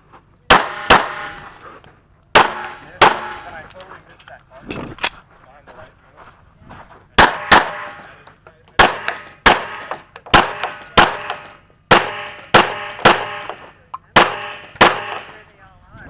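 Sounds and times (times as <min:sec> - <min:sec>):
pistol shots: 0:00.5 - 0:01.6, 0:02.4 - 0:03.6, 0:07.2 - 0:08.1, 0:08.8 - 0:15.4
metallic ringing of steel targets: 0:02.4 - 0:03.8, 0:07.2 - 0:08.1, 0:08.8 - 0:15.5.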